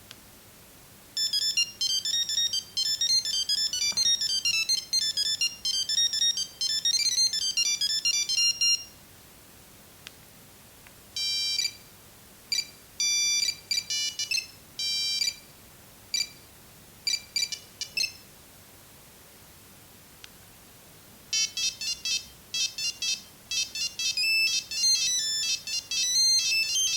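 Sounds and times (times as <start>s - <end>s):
mobile phone ringtone beeps: 1.2s - 8.9s, 11.2s - 11.8s, 12.5s - 15.4s, 21.3s - 26.9s.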